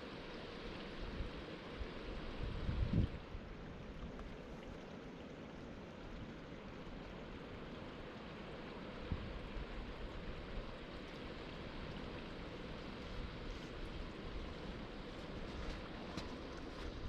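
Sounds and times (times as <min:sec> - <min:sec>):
wind buffeting microphone: 0:02.4 - 0:03.3.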